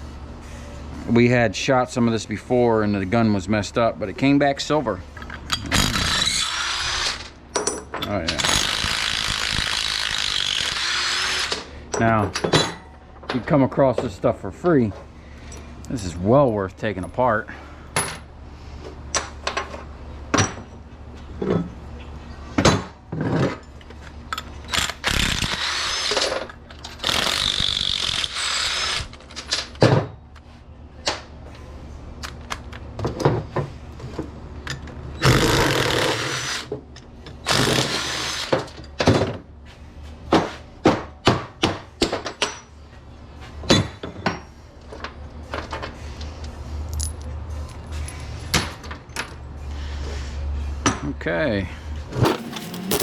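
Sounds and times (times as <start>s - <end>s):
power tool bursts: 5.7s - 7.3s, 8.4s - 11.6s, 24.8s - 26.2s, 35.2s - 36.6s, 37.4s - 38.5s, 52.2s - 53.0s.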